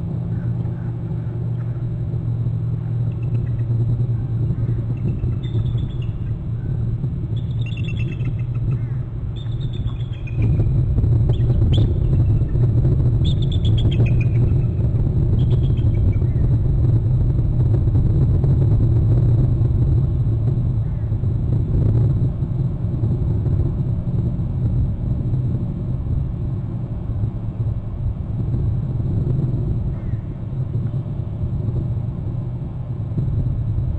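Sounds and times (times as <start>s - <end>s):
steady low rumble: 0.0s - 33.9s
eagles trilling: 7.4s - 10.7s, 11.3s - 14.8s.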